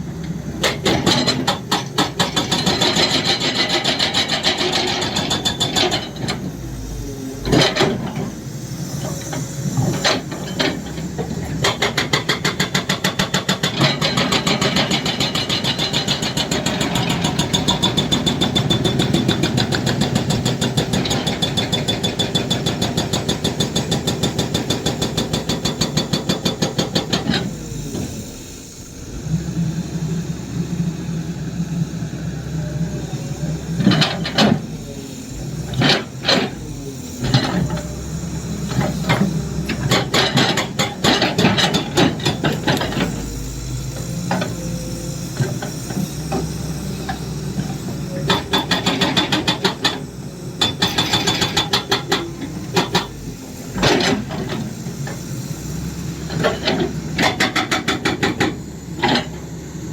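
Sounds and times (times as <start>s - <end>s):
diesel engine running: 0.0s - 59.9s
hydraulic breaker hammering: 0.6s - 6.4s, 35.8s - 43.4s, 47.1s - 54.7s, 56.4s - 59.4s.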